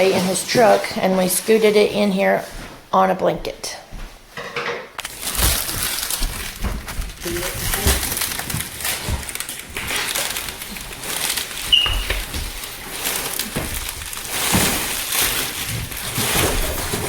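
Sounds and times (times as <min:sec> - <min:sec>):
cardboard box rustling and scraping: 0:05.2 - 0:17.0
brief high squeak: 0:11.7 - 0:12.1.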